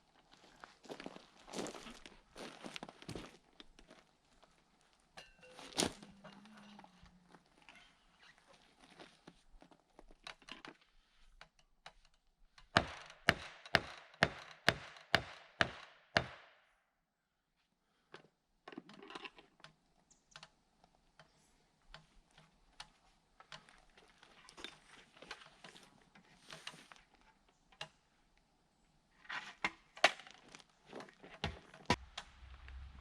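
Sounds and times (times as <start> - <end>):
hammer driving nail into wood: 12.7 - 16.6.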